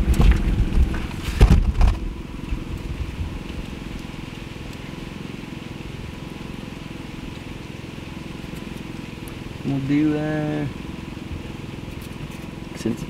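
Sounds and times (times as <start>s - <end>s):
loud knocks and clunks: 0.0s - 2.0s
low engine-like hum: 0.0s - 13.0s.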